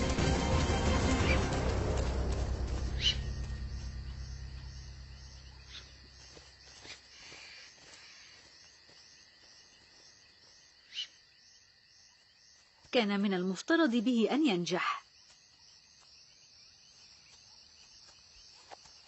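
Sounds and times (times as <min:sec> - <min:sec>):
soundtrack music: 0:00.0 - 0:06.0
crickets chirping: 0:01.4 - 0:19.0.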